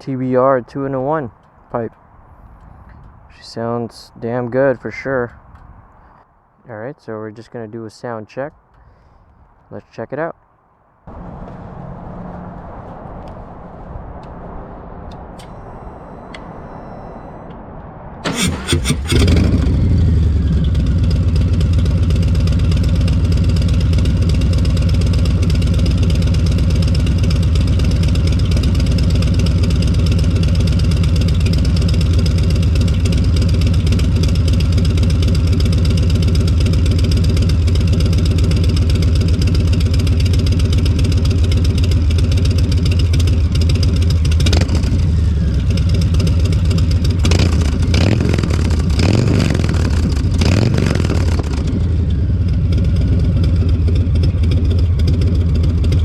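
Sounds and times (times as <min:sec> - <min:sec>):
motorcycle engine cranking: 0:18.2 - 0:56.0
motorcycle engine idling: 0:18.3 - 0:56.0.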